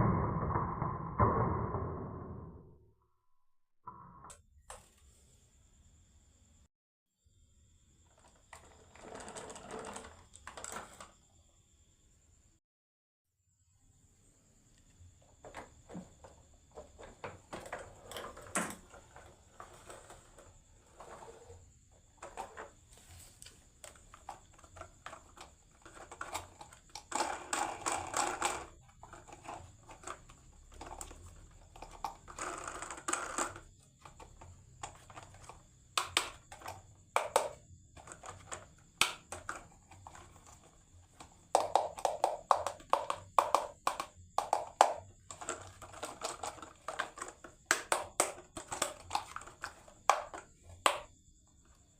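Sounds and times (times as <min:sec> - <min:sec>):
marbles rolling and clicking on track: 0:08.2 - 0:11.2, 0:15.4 - 0:22.8, 0:23.8 - 0:51.1.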